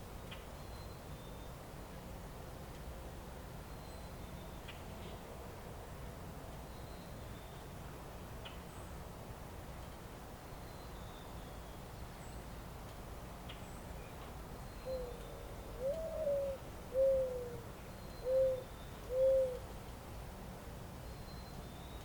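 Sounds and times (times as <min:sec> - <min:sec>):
faint background hiss: 0:00.0 - 0:22.0
dove cooing: 0:14.8 - 0:17.6, 0:18.2 - 0:19.6.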